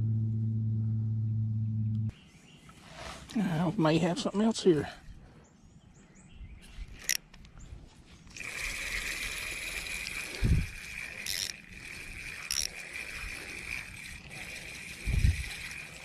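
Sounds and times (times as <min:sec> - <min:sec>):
fishing reel whirring: 0:06.9 - 0:07.2, 0:08.3 - 0:16.0
light reel clicks: 0:06.9 - 0:07.6, 0:08.3 - 0:16.0.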